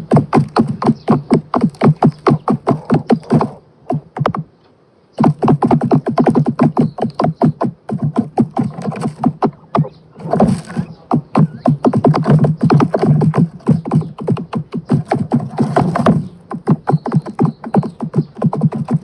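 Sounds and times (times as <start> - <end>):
electronic music with deep bass: 5.2 - 19.0.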